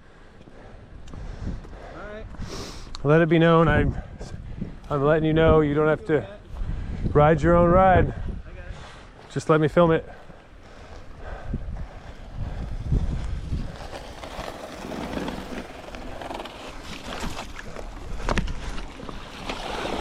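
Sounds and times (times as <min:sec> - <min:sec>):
water splashing around bike tyres: 0:16.7 - 0:20.0.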